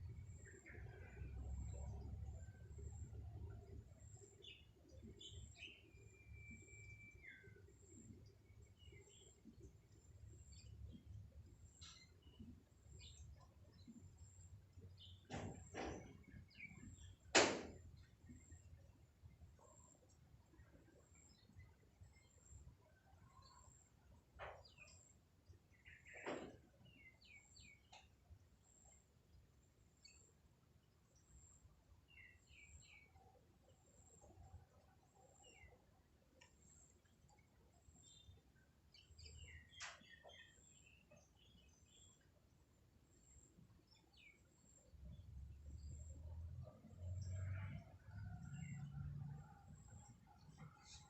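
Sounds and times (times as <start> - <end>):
bird chirps: 0.0 - 9.7, 10.4 - 17.3, 31.2 - 35.8, 36.4 - 42.4.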